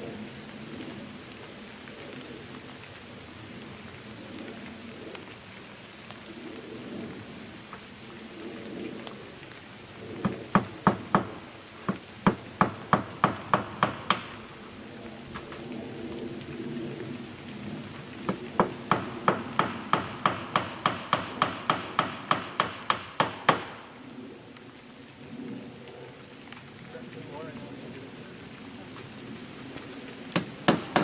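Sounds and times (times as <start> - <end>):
light rain pattering: 0.0 - 31.0
hammer driving nails: 18.6 - 23.7, 30.4 - 31.0.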